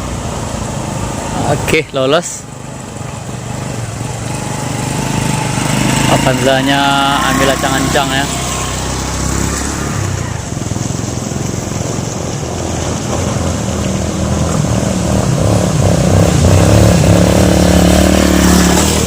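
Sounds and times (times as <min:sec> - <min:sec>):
car engine revving hard: 0:04.6 - 0:10.4, 0:14.1 - 0:19.0.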